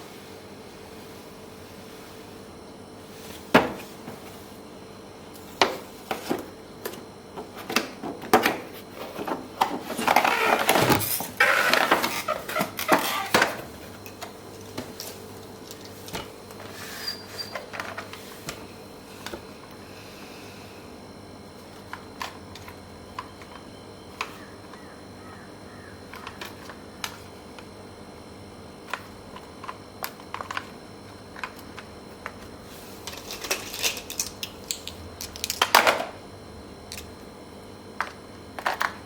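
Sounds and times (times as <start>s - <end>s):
rustling and scraping of packaging: 0.4s - 4.6s, 5.4s - 19.6s, 32.4s - 35.7s
knocks and clicks of packaging: 3.5s - 4.3s, 5.6s - 16.8s, 26.1s - 27.2s, 38.0s - 39.0s.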